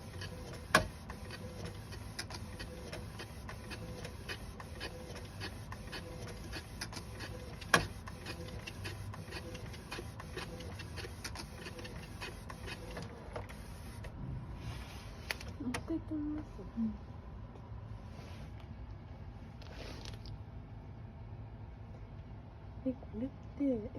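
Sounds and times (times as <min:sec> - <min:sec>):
printer clicking and rattling: 0:00.0 - 0:14.0
faint steady mechanism tone: 0:00.0 - 0:14.3.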